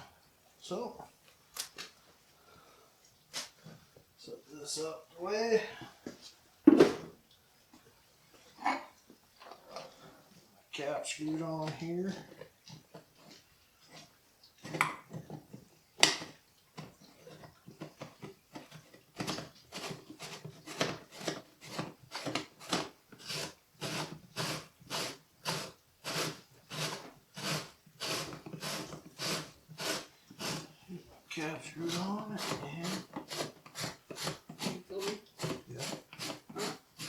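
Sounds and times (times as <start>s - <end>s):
sausage stuffer rasping: 16.0s - 37.0s.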